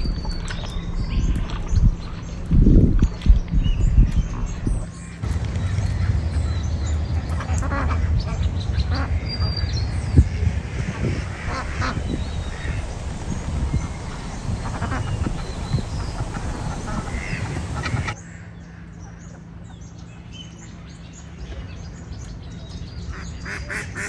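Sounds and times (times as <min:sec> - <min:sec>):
steady low rumble: 0:00.0 - 0:18.2
ducks quacking: 0:05.2 - 0:18.2, 0:23.1 - 0:24.0.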